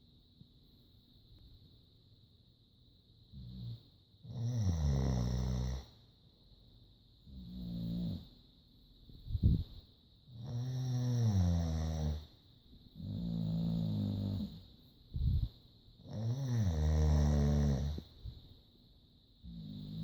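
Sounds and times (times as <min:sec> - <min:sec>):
dog snoring: 0:03.3 - 0:06.0, 0:07.2 - 0:08.4, 0:10.3 - 0:12.4, 0:13.0 - 0:14.7, 0:16.0 - 0:18.1, 0:19.4 - 0:20.0
man snoring: 0:03.4 - 0:05.9, 0:07.3 - 0:08.3, 0:10.4 - 0:12.3, 0:13.0 - 0:14.6, 0:16.0 - 0:18.0, 0:19.5 - 0:20.0.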